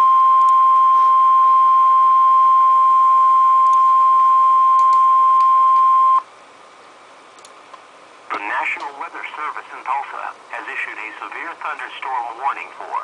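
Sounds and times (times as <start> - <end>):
steady alarm tone: 0.0 - 6.2
faint radio hiss: 0.0 - 13.0.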